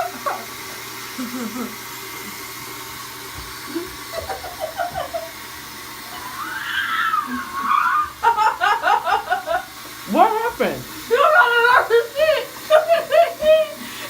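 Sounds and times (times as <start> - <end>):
child whining: 6.2 - 8.2.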